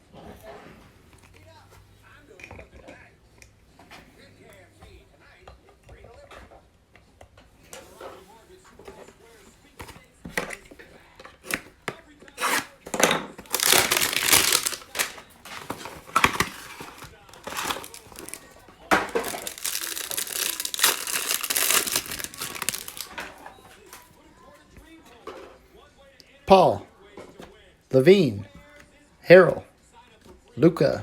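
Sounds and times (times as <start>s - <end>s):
cellophane wrappers crinkling and tearing: 12.4s - 12.7s, 13.4s - 23.4s.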